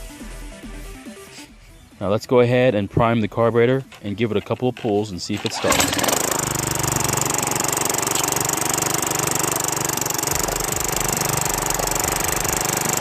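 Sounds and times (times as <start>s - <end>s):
string trimmer engine running: 4.7s - 13.0s.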